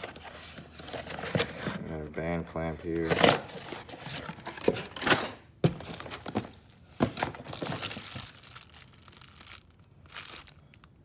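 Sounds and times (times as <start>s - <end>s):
packaging crinkling and tearing: 5.8s - 11.0s.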